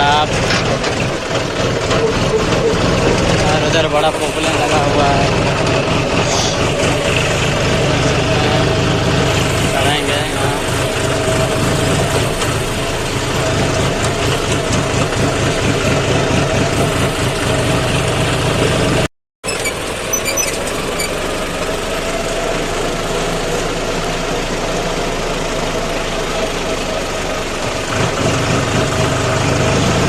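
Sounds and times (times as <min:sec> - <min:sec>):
diesel tractor engine running: 0:00.0 - 0:30.0.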